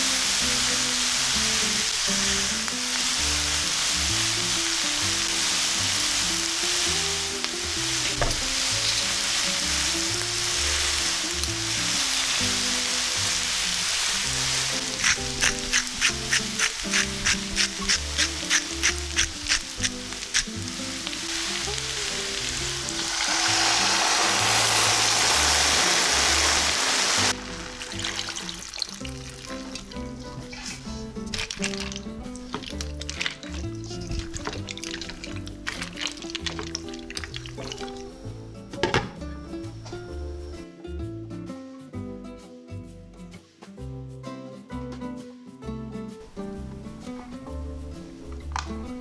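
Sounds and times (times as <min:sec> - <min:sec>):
food sizzling in oil: 0:00.0 - 0:38.3
background music with held notes: 0:00.0 - 0:49.0.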